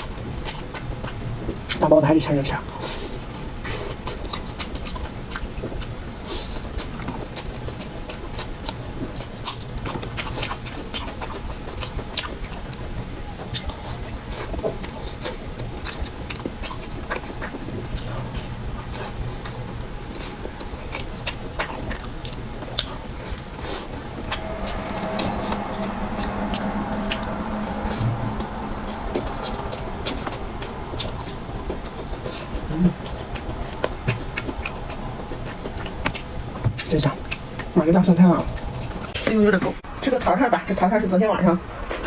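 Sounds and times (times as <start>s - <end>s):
steady low hum: 12.5s - 36.6s
muffled humming tone: 23.5s - 34.4s.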